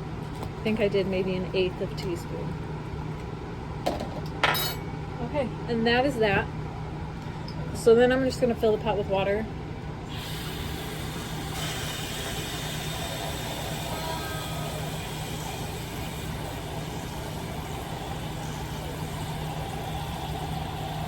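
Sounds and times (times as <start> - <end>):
water running into a pot: 10.1 - 21.0.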